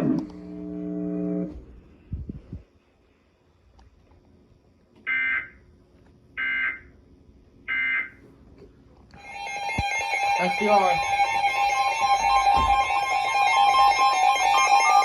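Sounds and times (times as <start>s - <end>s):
music: 9.2s - 15.0s.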